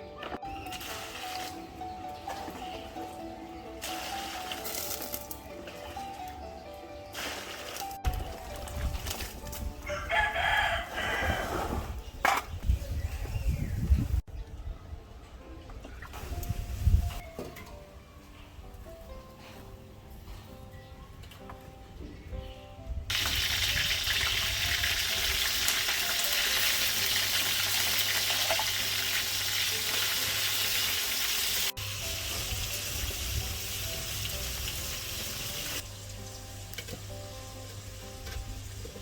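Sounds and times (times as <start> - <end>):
quiet background music: 0.0 - 39.0
food sizzling in hot oil: 23.1 - 38.9.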